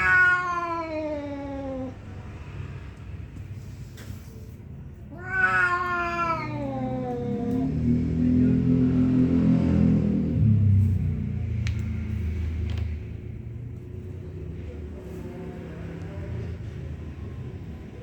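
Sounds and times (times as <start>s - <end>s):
cats yowling: 0.0s - 2.0s, 5.1s - 8.0s.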